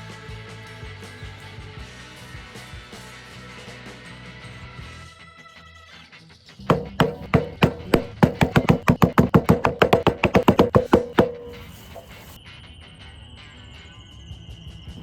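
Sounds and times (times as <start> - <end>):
sharp ringing knocks: 6.7 - 12.3.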